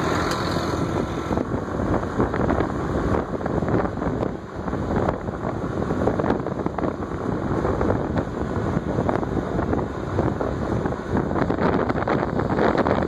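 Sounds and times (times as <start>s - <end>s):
scooter engine running: 0.0s - 13.0s
wind rushing over microphone: 0.0s - 13.0s.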